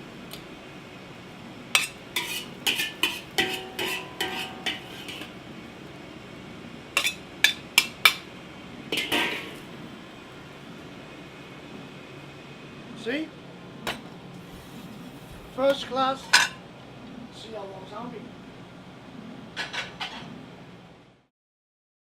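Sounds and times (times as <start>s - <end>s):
utensil scraping a dish: 1.8s - 5.3s, 14.4s - 15.6s
utensils clinking against dishes: 1.8s - 5.3s, 7.0s - 8.2s, 9.0s - 9.6s.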